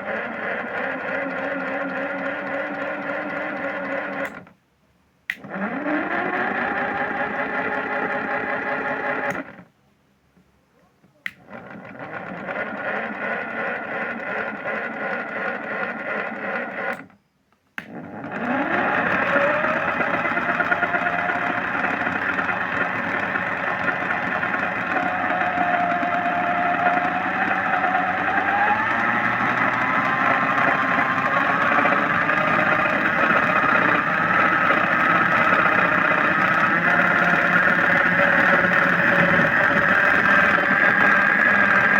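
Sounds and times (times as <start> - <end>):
washing machine motor humming: 5.3 - 9.6, 17.8 - 41.9.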